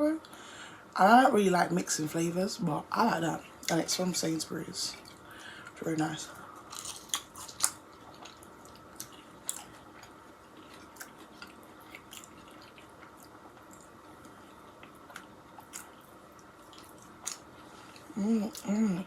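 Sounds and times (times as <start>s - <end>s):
faint chewing of food: 4.9s - 19.0s.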